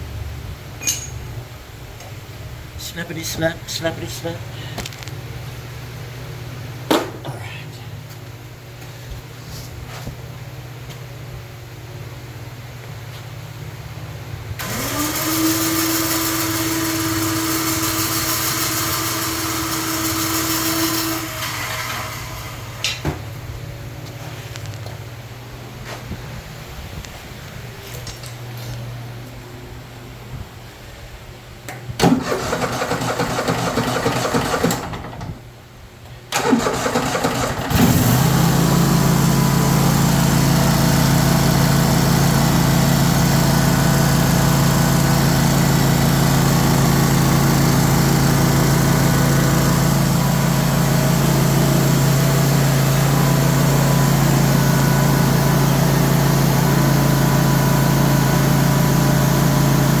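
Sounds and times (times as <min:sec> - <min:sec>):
starter cranking engine: 0:14.6 - 0:22.6, 0:32.0 - 0:35.2, 0:36.3 - 0:38.6
mower engine running: 0:14.6 - 0:23.0, 0:32.1 - 0:35.1, 0:36.4 - 1:00.0.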